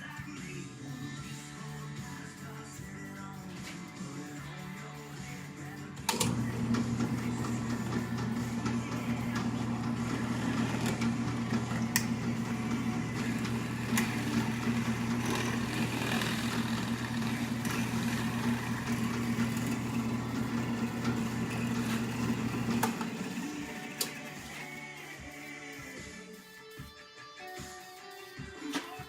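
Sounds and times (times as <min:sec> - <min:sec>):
electric motor humming: 0:06.1 - 0:24.9.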